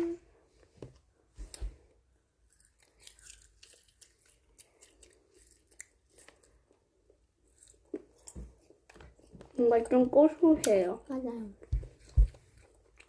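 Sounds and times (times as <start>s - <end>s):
crunchy snack chewing: 2.5s - 6.6s, 7.4s - 8.7s.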